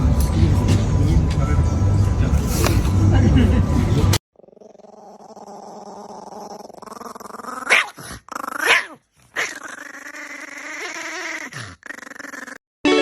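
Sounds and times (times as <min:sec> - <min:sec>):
dog growling: 0:04.4 - 0:12.6.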